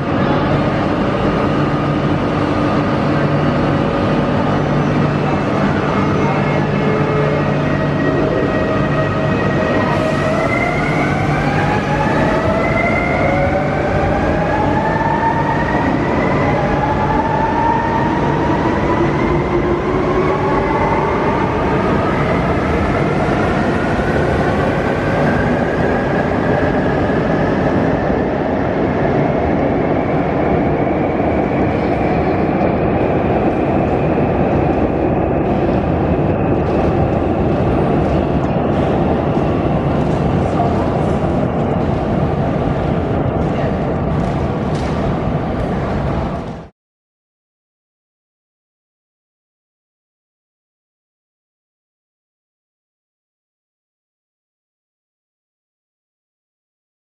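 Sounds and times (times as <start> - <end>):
train running rumble: 18.2 - 46.7.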